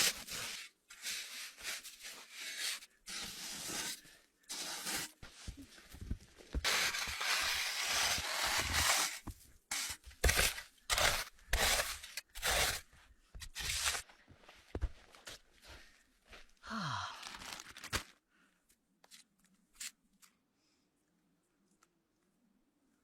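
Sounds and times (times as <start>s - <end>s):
shovel scraping packed snow: 0.0s - 5.5s, 6.6s - 14.0s.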